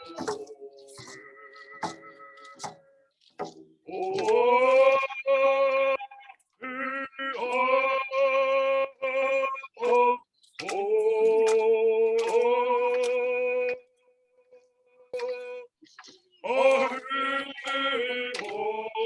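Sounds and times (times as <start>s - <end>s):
person singing long held notes: 3.9s - 13.8s, 16.4s - 19.0s.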